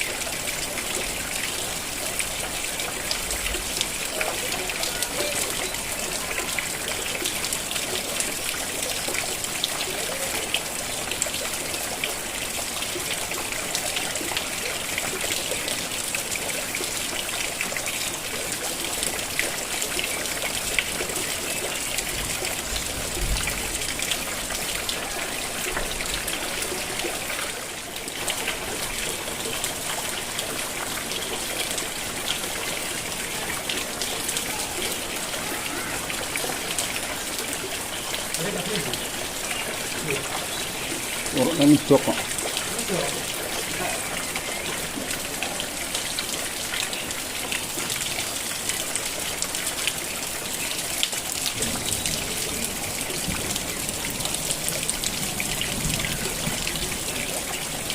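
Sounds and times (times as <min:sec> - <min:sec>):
rain falling: 0:00.0 - 0:57.9
water trickling: 0:00.0 - 0:57.9.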